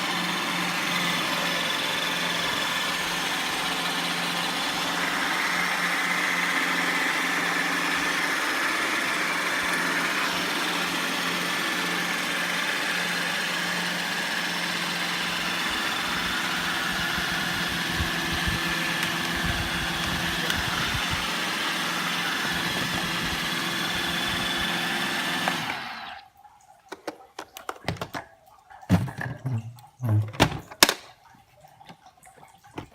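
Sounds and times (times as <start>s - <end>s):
robot vacuum whirring: 0.0s - 26.2s.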